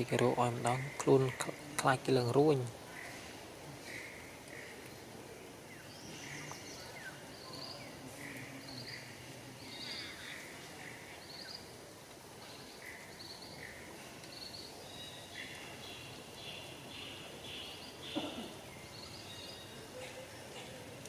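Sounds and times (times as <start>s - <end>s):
birds chirping: 0.0s - 21.0s
steady background hiss: 0.0s - 21.0s.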